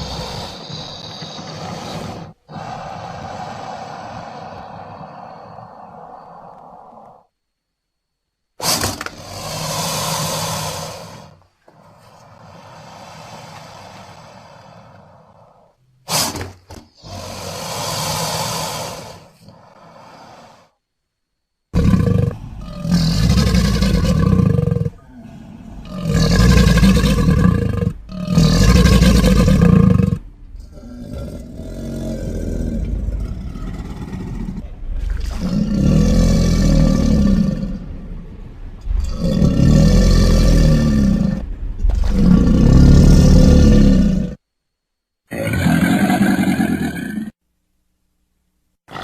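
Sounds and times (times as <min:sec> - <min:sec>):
monster roaring: 0:00.0 - 0:07.3, 0:21.8 - 0:44.4, 0:45.3 - 0:47.4.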